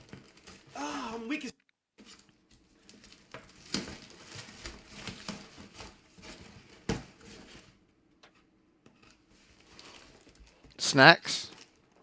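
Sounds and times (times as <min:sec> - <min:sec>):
package rustling and crinkling: 0:00.0 - 0:00.8, 0:02.0 - 0:07.8, 0:09.1 - 0:10.8, 0:11.5 - 0:12.0.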